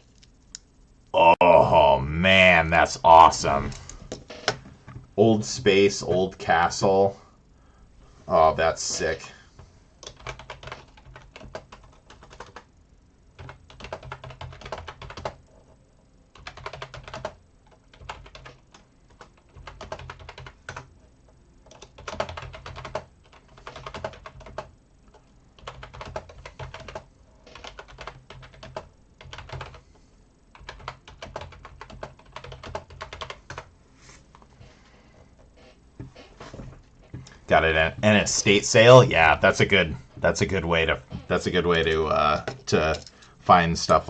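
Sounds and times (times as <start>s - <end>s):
typing on a keyboard: 10.0s - 12.7s, 13.4s - 15.4s, 16.4s - 20.9s, 21.7s - 29.8s, 30.5s - 33.7s.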